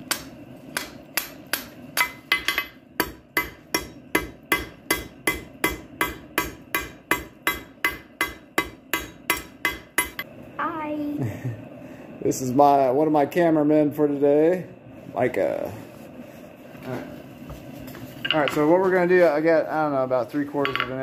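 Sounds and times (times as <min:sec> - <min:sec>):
hammer striking steel on anvil: 0:00.1 - 0:10.2.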